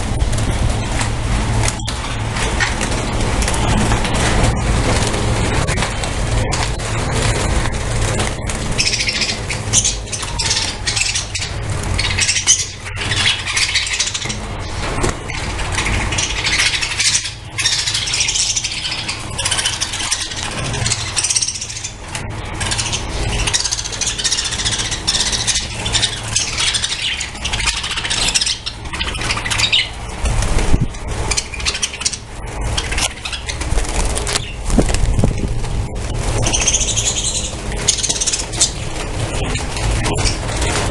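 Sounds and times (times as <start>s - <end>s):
low rumble: 0.0s - 10.3s, 32.2s - 40.9s
budgerigars chattering: 5.7s - 34.7s, 36.0s - 40.9s.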